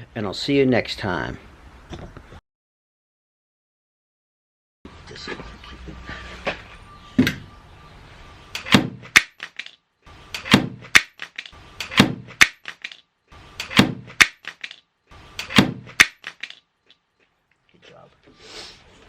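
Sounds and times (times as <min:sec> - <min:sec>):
sharp knocks in pairs: 0:08.6 - 0:09.6, 0:10.4 - 0:12.9, 0:13.6 - 0:14.7, 0:15.4 - 0:16.5.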